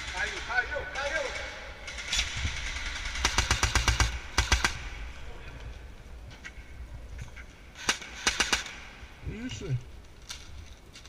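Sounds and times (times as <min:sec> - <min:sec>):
airsoft gun firing bursts: 0:01.2 - 0:04.9, 0:07.8 - 0:08.9.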